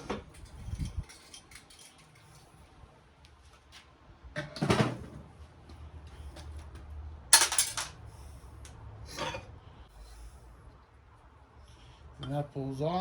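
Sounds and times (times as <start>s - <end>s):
metal parts clanking: 7.3s - 8.0s.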